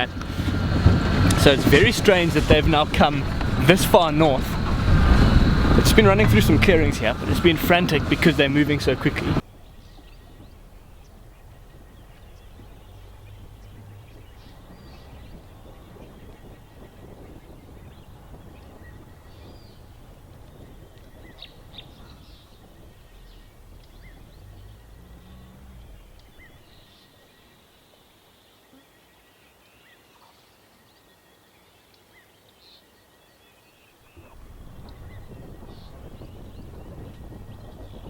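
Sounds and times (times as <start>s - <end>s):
low vehicle rumble: 0.0s - 27.1s, 34.2s - 38.0s
bird chirps: 1.5s - 27.7s.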